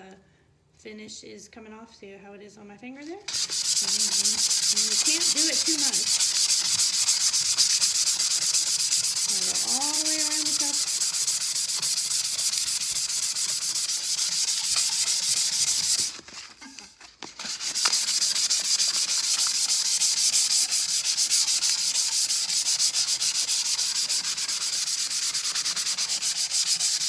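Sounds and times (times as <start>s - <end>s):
sandpaper scrubbing metal: 3.3s - 16.5s, 17.4s - 27.0s.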